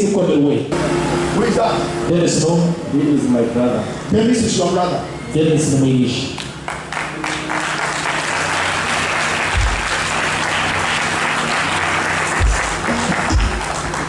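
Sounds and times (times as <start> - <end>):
held low musical note: 0.7 - 6.1
congregation applauding: 6.4 - 14.0.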